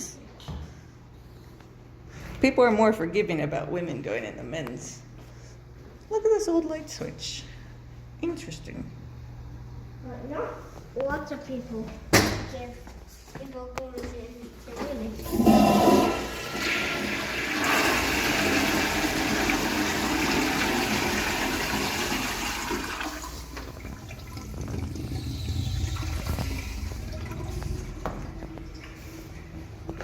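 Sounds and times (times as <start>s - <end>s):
water running into toilet: 15.2s - 29.0s
toilet flushing: 15.2s - 29.4s.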